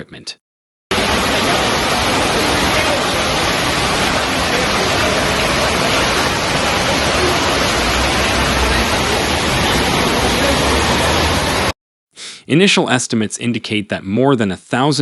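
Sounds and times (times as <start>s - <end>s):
rushing floodwater: 0.9s - 11.7s.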